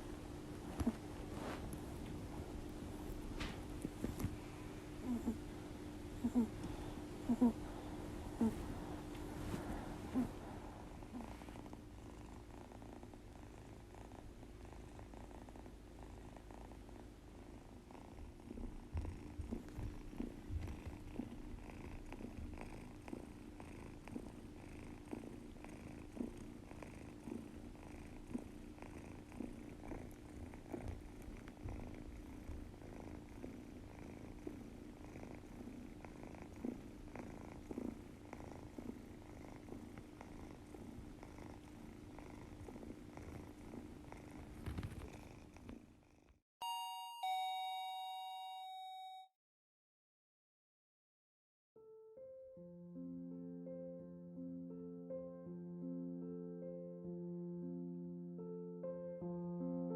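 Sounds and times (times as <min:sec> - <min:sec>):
kitten snoring: 0:00.0 - 0:46.4.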